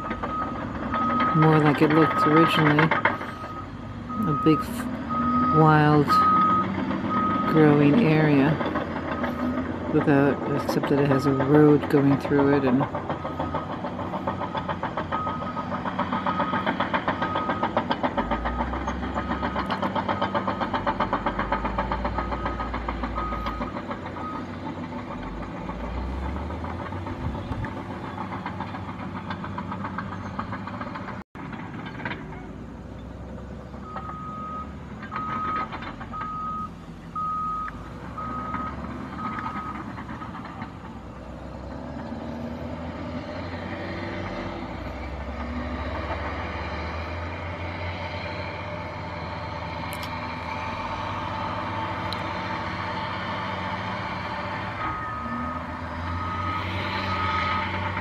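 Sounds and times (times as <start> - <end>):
reversing alarm beeping: 0.0 - 2.8, 3.4 - 9.6, 10.3 - 24.5, 33.8 - 39.9, 54.6 - 57.9
diesel machinery running: 0.0 - 58.0.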